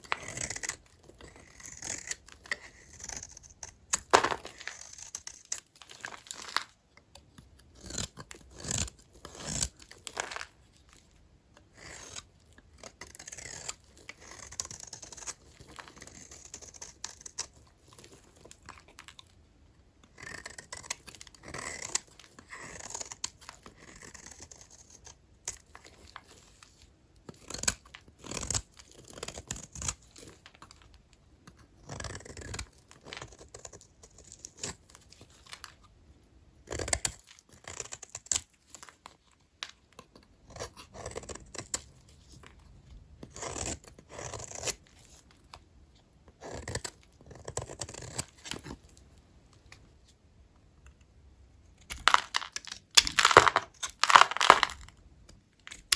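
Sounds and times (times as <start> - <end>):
knife cutting soap bars: 0.0 - 10.7, 51.8 - 54.9.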